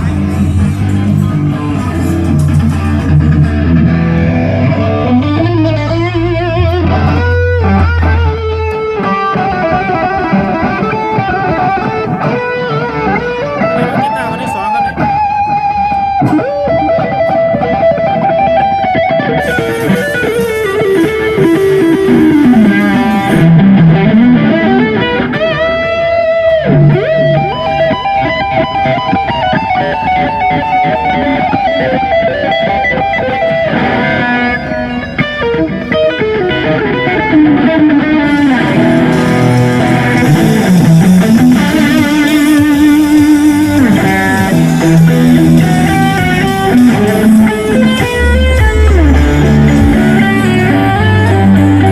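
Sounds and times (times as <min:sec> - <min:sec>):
electric guitar lead: 0:00.0 - 0:51.9.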